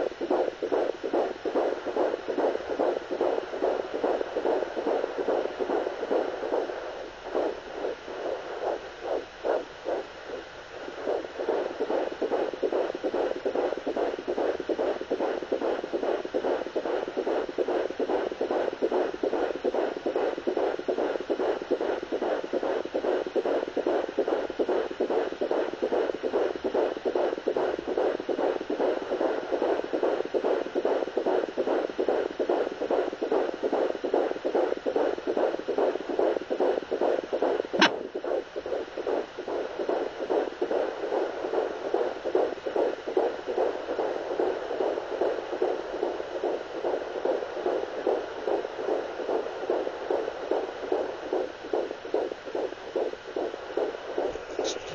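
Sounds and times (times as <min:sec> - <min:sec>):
fetal heartbeat whooshing pulse: 0:00.0 - 0:54.9
sharp click: 0:37.8 - 0:38.0.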